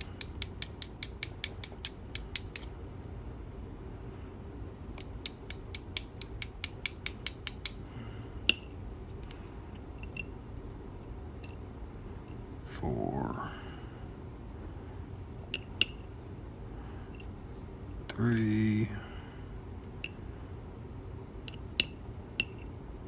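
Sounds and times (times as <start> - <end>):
small metal lock clicks: 0.0 - 2.7, 5.0 - 7.8.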